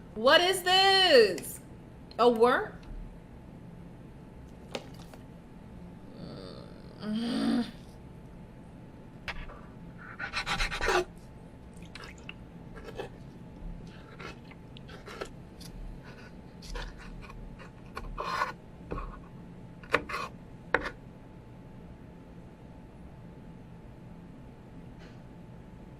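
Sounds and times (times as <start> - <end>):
wet chewing and smacking: 11.7 - 15.7.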